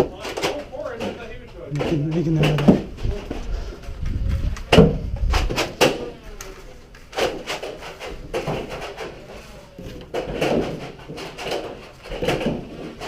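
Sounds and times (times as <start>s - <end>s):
sharp knocks and clacks: 0.0s - 3.4s, 10.0s - 13.0s.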